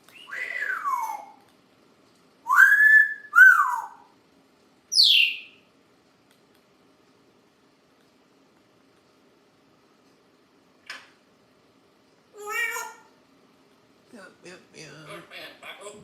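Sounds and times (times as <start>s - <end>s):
parrot whistling: 0.1s - 1.4s, 2.4s - 4.1s, 4.9s - 5.6s.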